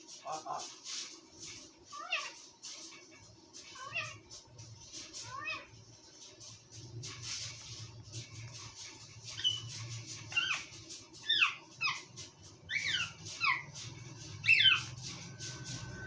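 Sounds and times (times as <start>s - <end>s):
small animal squeaky calls: 1.9s - 4.3s, 5.1s - 5.7s, 9.2s - 15.2s.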